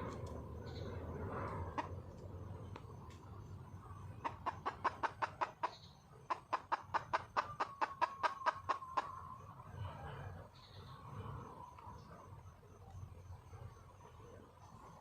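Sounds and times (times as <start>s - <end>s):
hen clucking: 4.2s - 9.3s.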